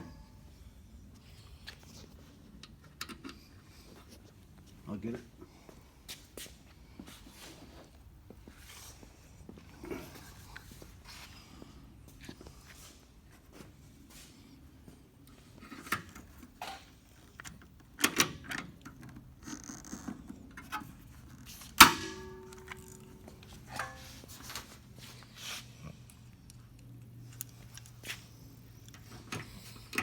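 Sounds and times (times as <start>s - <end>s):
hand tools clicking and tapping: 21.8s - 24.2s.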